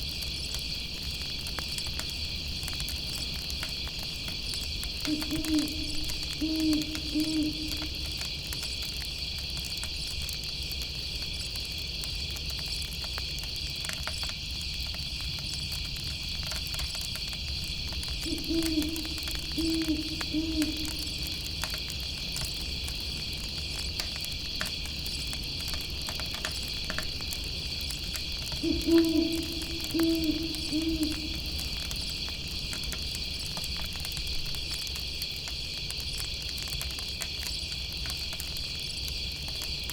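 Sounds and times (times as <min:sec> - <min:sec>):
campfire crackling: 0:00.0 - 0:39.9
crickets chirping: 0:00.0 - 0:39.9
owl hooting: 0:05.1 - 0:08.2, 0:18.2 - 0:21.3, 0:28.5 - 0:31.8.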